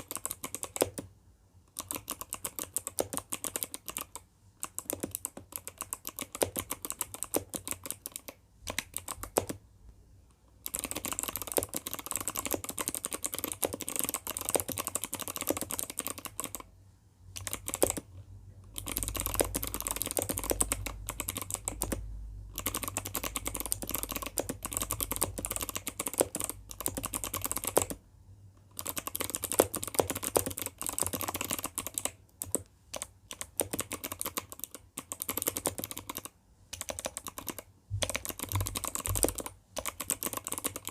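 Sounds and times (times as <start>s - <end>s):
mechanical keyboard typing: 0.0s - 1.1s, 1.7s - 9.6s, 10.6s - 16.7s, 17.3s - 28.0s, 28.7s - 40.9s.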